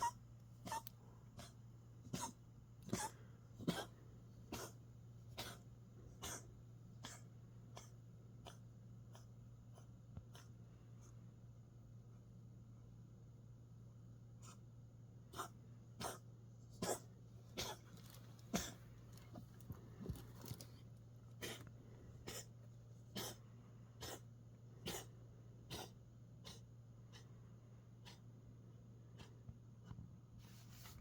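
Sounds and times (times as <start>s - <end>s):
cat coughing: 0.0s - 9.2s, 15.3s - 16.2s, 16.8s - 18.8s, 21.4s - 22.5s, 23.1s - 23.4s, 24.0s - 25.1s, 25.7s - 26.6s
steady low hum: 0.0s - 31.0s.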